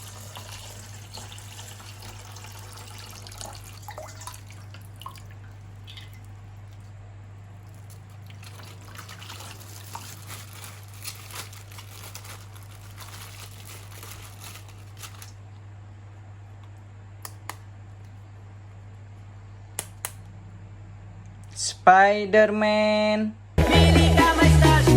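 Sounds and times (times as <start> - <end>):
low electrical hum: 0.0 - 23.6
wet slimy handling sounds: 4.0 - 15.4.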